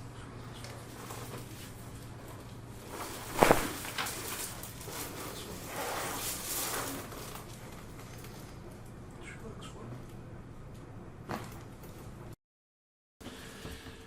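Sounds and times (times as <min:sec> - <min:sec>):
soft rustling: 0:02.9 - 0:07.4.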